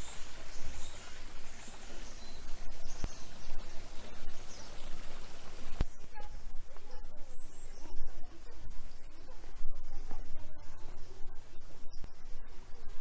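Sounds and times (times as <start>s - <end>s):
insect calls: 0.0s - 6.6s
garden stream rushing: 0.0s - 8.2s
faint bird chirps: 0.0s - 13.0s.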